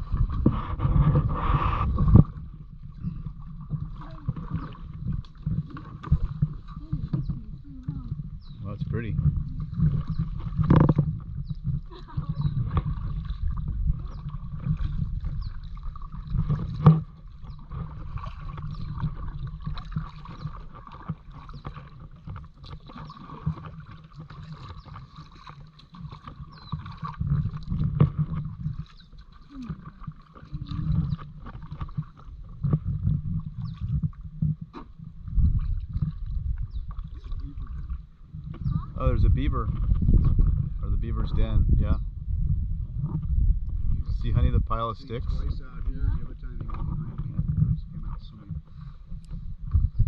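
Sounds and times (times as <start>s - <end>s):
low rumble: 0.0s - 20.1s, 32.4s - 48.6s
paddle splashing in water: 0.0s - 41.7s, 42.8s - 50.0s.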